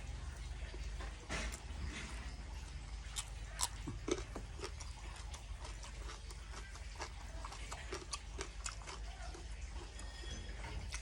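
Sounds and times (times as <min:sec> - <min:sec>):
person chewing and smacking: 0:03.0 - 0:11.0.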